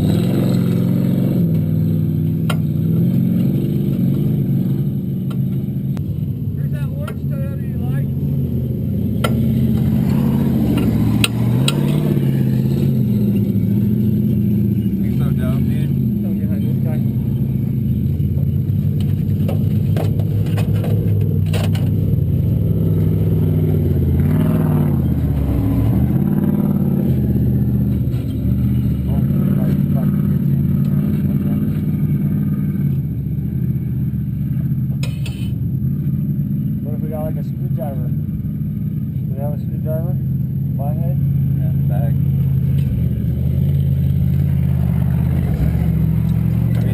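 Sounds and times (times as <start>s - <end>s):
engine running steadily: 0.0s - 46.9s.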